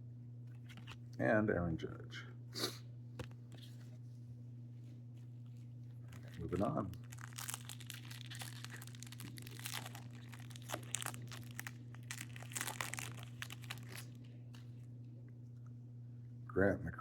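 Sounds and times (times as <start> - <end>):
plastic wrapper crinkling and tearing: 6.0 - 14.7.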